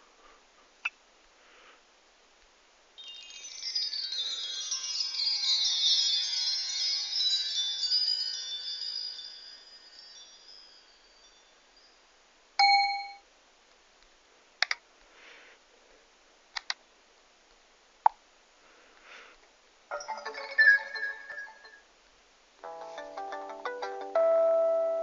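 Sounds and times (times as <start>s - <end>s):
sharp clicks: 14.6s - 14.8s, 16.6s - 16.8s
phone chiming tone: 19.9s - 21.8s.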